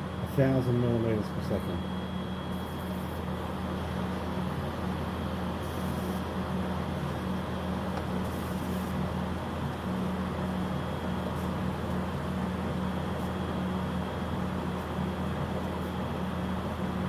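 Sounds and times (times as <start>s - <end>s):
laser engraver mechanical hum: 0.0s - 17.0s
faint high whine: 0.2s - 3.3s.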